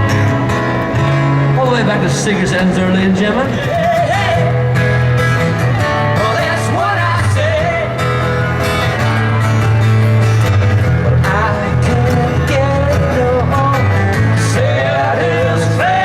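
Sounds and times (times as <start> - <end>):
plucked guitar: 0.0 - 16.0
steady bass: 0.0 - 16.0
person singing: 11.2 - 16.0.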